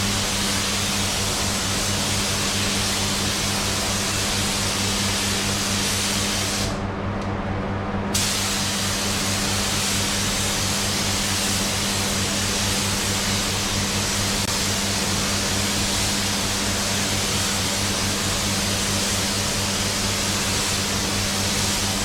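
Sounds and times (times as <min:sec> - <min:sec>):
paint spray gun hissing: 0:00.0 - 0:06.8, 0:08.2 - 0:22.0.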